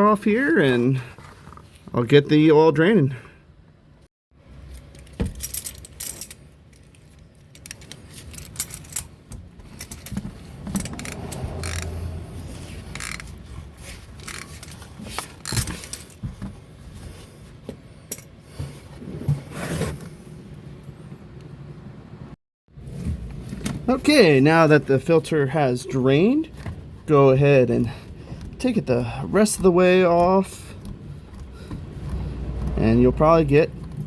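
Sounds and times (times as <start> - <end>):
ratchet wrench clicking and scraping: 10.8 - 13.4, 14.2 - 14.8.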